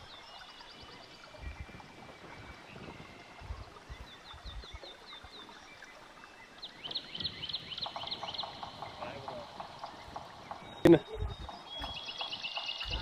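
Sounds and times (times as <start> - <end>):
birds chirping: 0.0 - 13.0
low thuds: 7.9 - 13.0.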